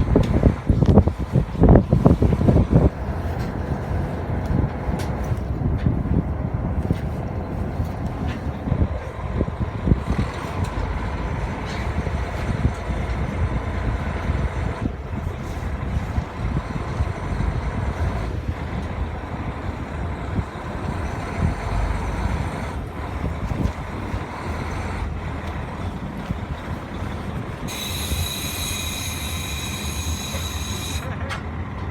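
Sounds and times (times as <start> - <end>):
diesel railcar rumbling: 0.0 - 31.9
train brakes squealing: 27.6 - 31.2.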